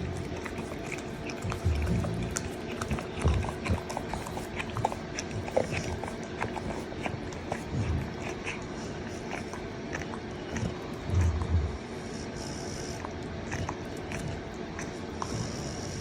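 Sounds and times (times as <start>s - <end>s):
dog making small sounds: 0.0s - 11.8s
faint steady hum: 0.0s - 16.0s.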